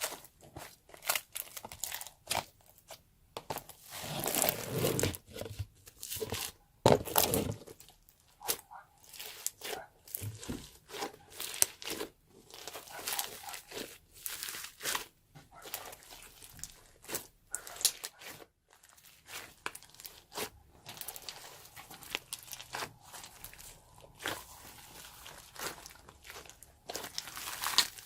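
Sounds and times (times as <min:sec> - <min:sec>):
slime crunching and popping: 0:06.1 - 0:28.0.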